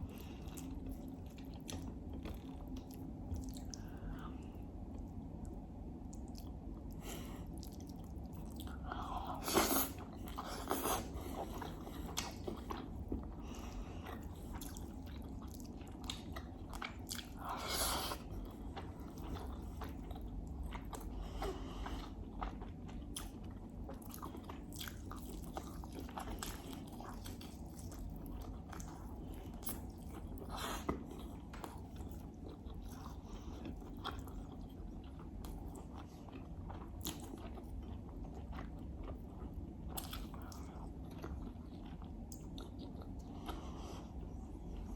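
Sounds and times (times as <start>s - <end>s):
steady low hum: 0.0s - 44.9s
close chewing and biting: 6.1s - 44.9s.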